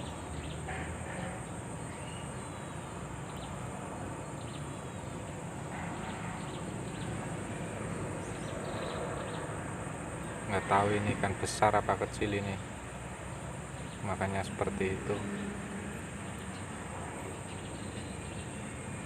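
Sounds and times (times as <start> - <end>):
faint bird chirps: 0.0 - 3.6
insect chorus: 0.0 - 19.0.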